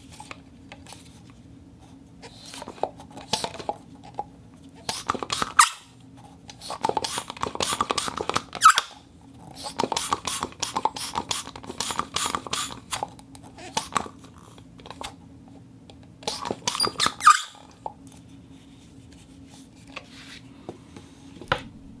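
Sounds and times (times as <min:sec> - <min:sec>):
vacuum cleaner suction squeaks: 0:16.7 - 0:17.6
steady low hum: 0:17.6 - 0:22.0.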